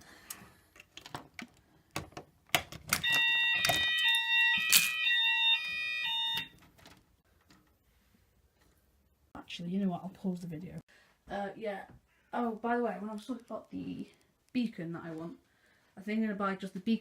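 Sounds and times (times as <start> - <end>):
two-tone fire alarm sounders: 3.0 - 6.6.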